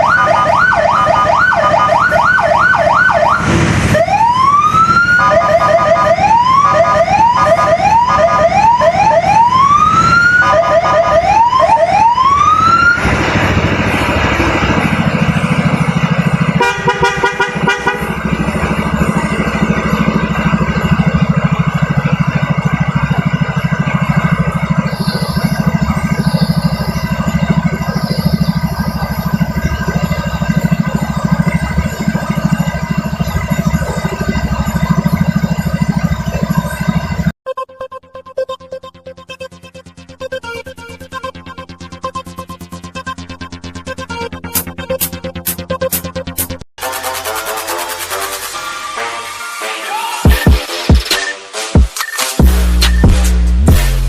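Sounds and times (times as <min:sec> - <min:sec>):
electronic police siren: 0:00.0 - 0:54.0
scooter engine idling: 0:13.0 - 0:37.3
buzzing horn tone: 0:14.8 - 0:37.3.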